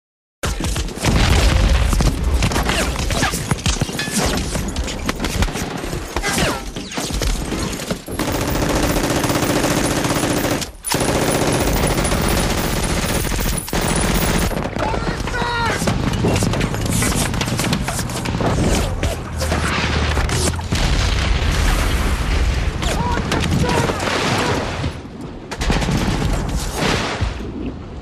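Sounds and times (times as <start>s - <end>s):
rapid sharp shots: 0.9s - 21.1s.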